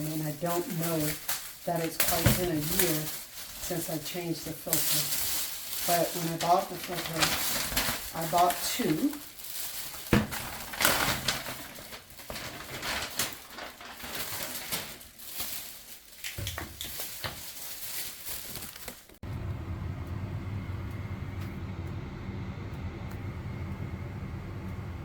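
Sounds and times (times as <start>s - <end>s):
rustling and clicking handling: 0.0s - 19.2s
gas furnace humming: 19.2s - 25.0s.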